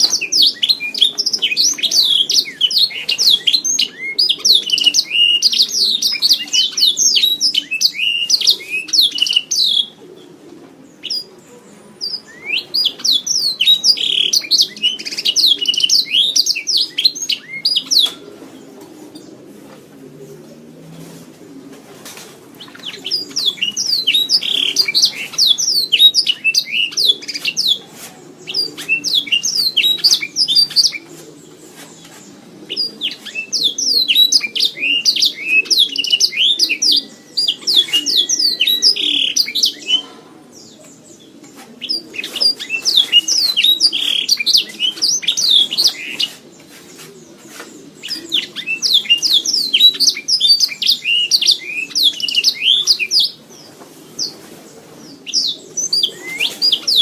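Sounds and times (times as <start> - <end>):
canary singing: 0.0 - 19.4, 22.6 - 54.4, 55.0 - 57.0.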